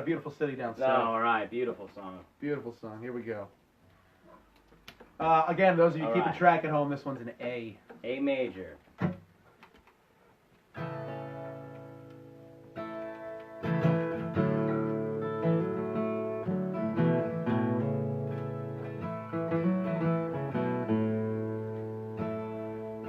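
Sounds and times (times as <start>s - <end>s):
acoustic guitar strumming chords: 10.7s - 23.0s.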